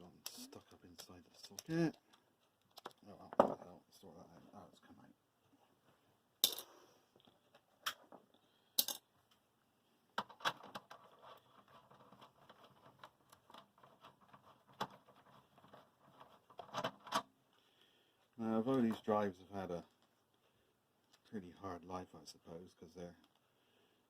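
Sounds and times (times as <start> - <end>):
light irregular clicking and rattling: 0.2 - 3.6.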